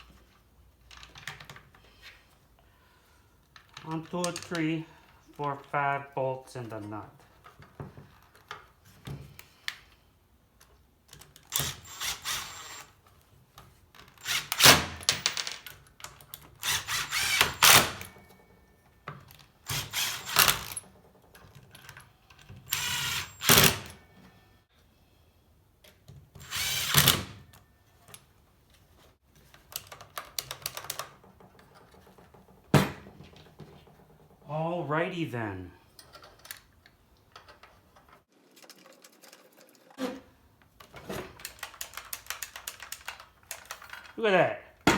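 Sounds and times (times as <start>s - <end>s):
power drill running in bursts: 11.7s - 12.8s, 16.6s - 18.0s, 19.7s - 20.8s, 22.7s - 23.9s, 26.4s - 27.3s.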